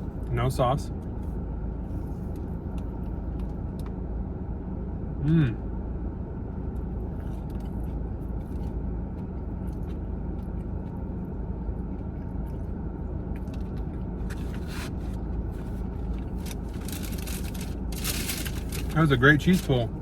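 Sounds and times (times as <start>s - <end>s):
steady low rumble: 0.0s - 20.0s
crunchy chewing: 6.8s - 19.0s.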